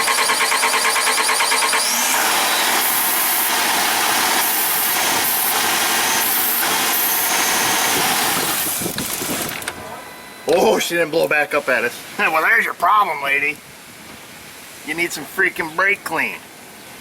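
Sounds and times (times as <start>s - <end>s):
starter cranking engine: 0.0s - 9.8s
engine running: 0.0s - 10.2s.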